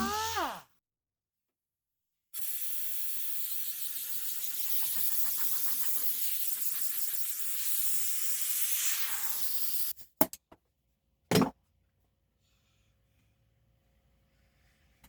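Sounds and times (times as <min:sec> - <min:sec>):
sandpaper rasping: 0:03.5 - 0:09.8.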